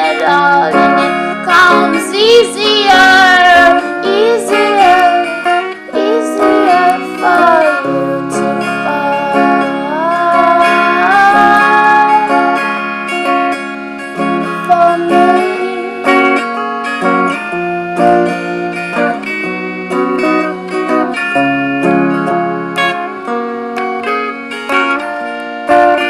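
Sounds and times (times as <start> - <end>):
guitar music: 0.0 - 26.0.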